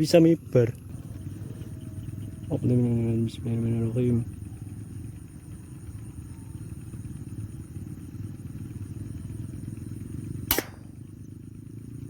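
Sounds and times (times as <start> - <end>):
steady low rumble: 0.0 - 12.0
air rifle shot: 10.4 - 11.0.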